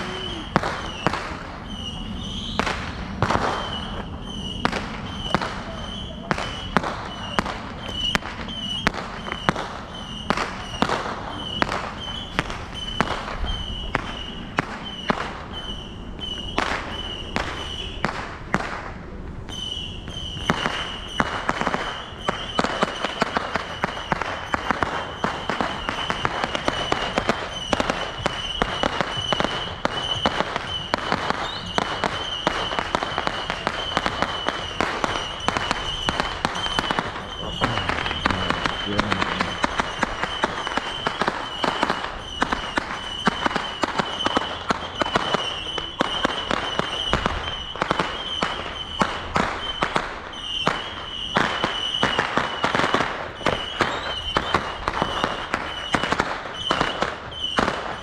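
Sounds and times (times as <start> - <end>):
fireworks bangs and crackles: 0.0 - 58.0
steady high tone: 36.6 - 40.6.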